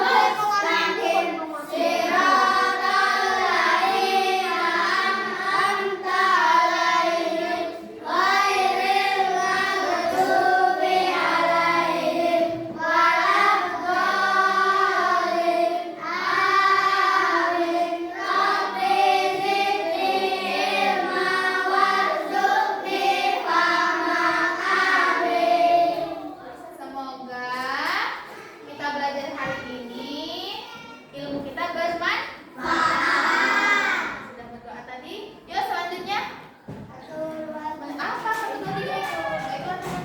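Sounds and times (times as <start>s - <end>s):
children chanting in unison: 0.0s - 26.7s, 32.5s - 34.3s.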